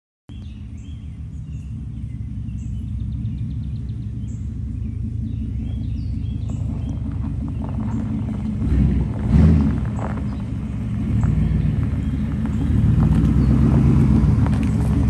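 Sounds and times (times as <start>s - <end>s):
birds chirping: 0.3s - 15.0s
vehicle engine idling: 0.3s - 15.0s.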